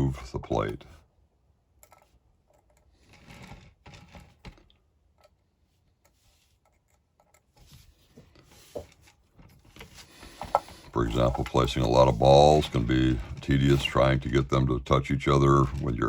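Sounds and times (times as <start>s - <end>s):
light clicks and rustles of handling: 1.8s - 14.6s.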